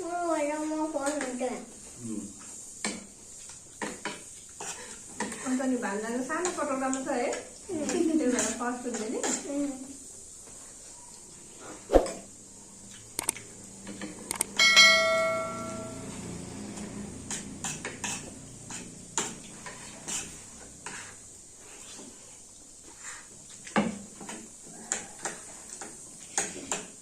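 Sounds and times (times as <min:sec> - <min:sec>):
spoon striking ringing metal bowl: 0:14.6 - 0:16.1
spoons clinking against bowls: 0:14.6 - 0:16.1.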